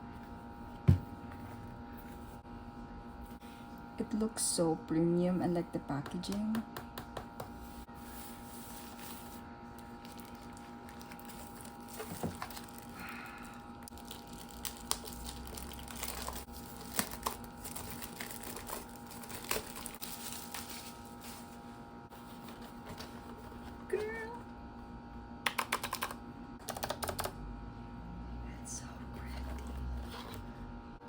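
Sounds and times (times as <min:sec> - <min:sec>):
steady hum: 0:00.0 - 0:31.0
plastic and cardboard crinkling: 0:08.1 - 0:23.6.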